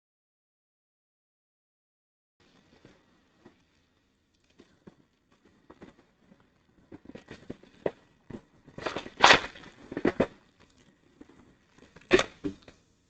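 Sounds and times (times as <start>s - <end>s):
packaging crinkling and rustling: 2.5s - 12.7s.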